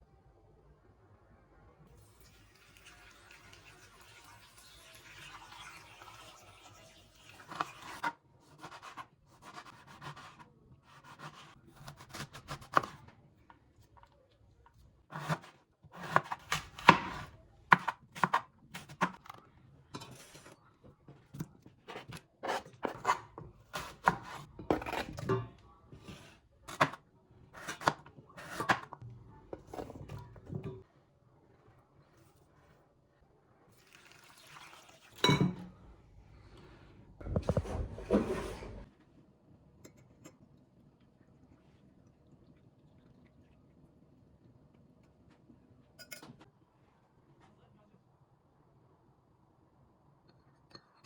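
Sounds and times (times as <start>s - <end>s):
knife cutting fruit on board: 7.5s - 13.0s, 15.1s - 19.4s, 21.4s - 25.3s, 26.0s - 27.0s, 27.6s - 29.0s.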